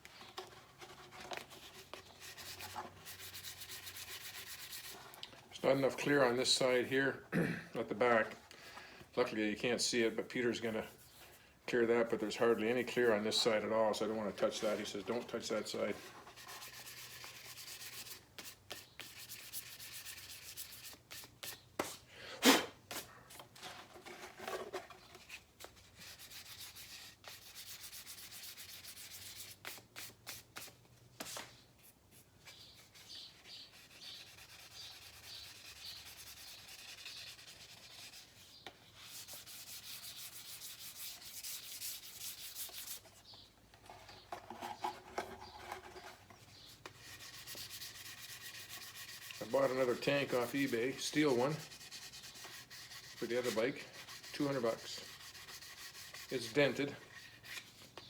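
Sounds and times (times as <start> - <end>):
hand sanding strokes: 2.0 - 5.1, 12.4 - 22.1, 25.8 - 30.8, 32.2 - 43.2, 46.8 - 57.8.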